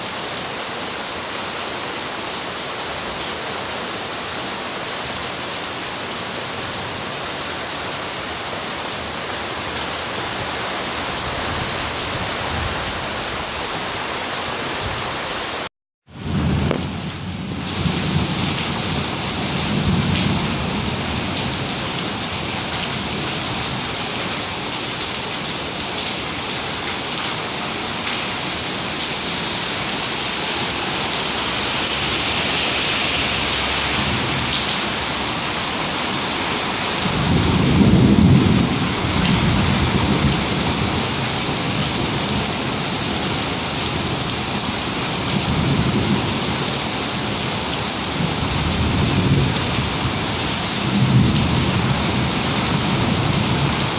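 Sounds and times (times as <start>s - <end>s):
steady rain: 0.0s - 53.9s
thunder rumbling: 37.0s - 42.5s.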